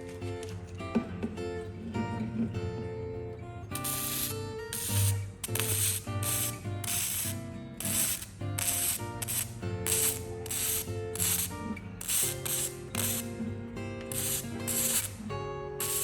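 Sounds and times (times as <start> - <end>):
short bursts of hiss: 3.7 - 16.0.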